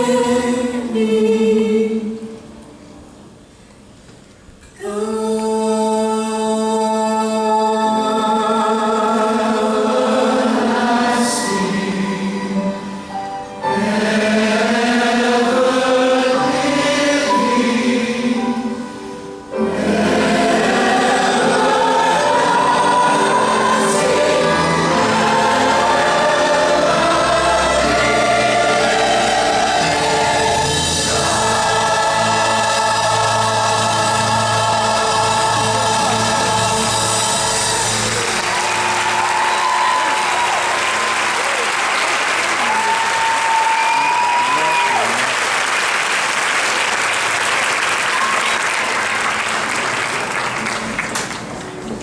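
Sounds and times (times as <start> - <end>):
choir singing: 0.0 - 2.4, 4.8 - 43.4.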